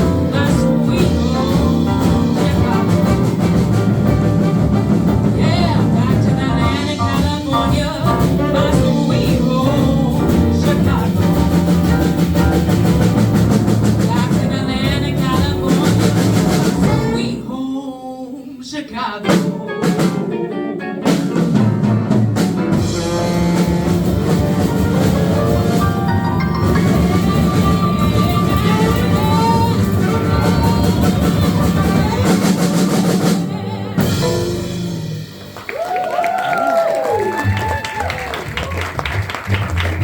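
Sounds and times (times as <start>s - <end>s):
person singing: 0.0s - 3.7s, 5.3s - 12.1s, 14.0s - 21.8s, 25.6s - 35.1s
sharp drum hit: 0.0s - 17.2s, 21.1s - 35.5s
blues band playing: 0.0s - 17.8s, 18.9s - 40.0s
drums: 0.0s - 40.0s
guitar: 19.1s - 35.8s.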